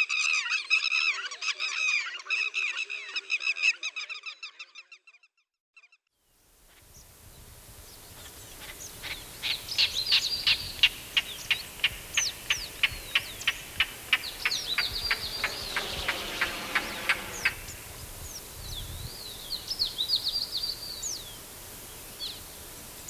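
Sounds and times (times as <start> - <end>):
insects hissing: 6.5 - 23.0
bird chirping sharply: 8.5 - 21.4.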